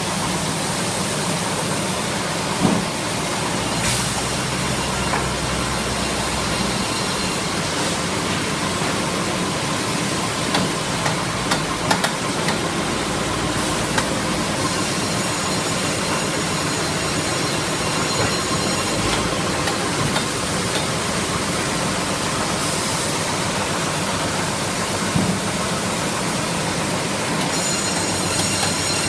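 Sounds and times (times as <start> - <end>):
sawmill machinery running: 0.0 - 29.0
sharp knocks and clacks: 10.5 - 12.7.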